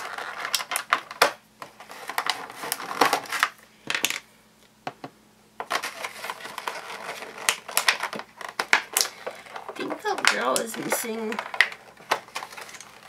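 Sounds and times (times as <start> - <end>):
plastic toy pieces clicking: 5.6 - 13.0.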